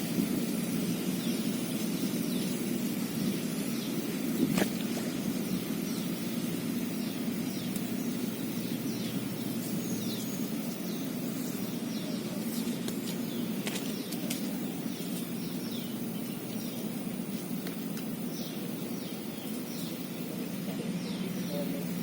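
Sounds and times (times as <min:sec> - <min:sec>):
bird chirping: 0:00.0 - 0:22.0
low background rush: 0:00.0 - 0:22.0.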